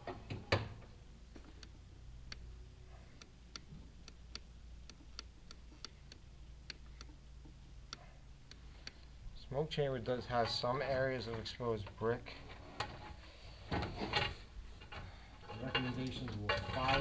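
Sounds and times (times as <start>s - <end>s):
inspection equipment ticking: 0.0s - 12.2s
low steady hum: 0.0s - 17.0s.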